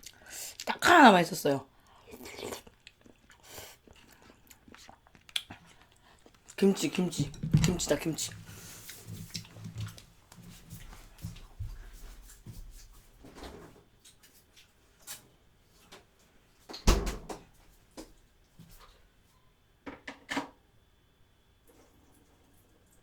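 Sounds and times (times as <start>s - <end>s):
dishes and utensils knocking: 7.2s - 8.1s.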